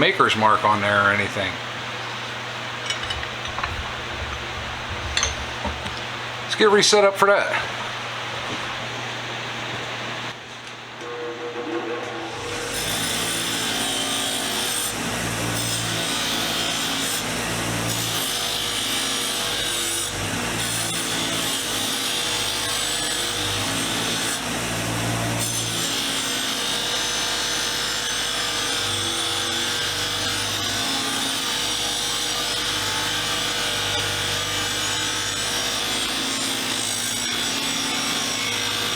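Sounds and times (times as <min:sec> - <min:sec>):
motor hum: 0:02.8 - 0:06.2
wire wheel brushing metal: 0:02.8 - 0:06.2.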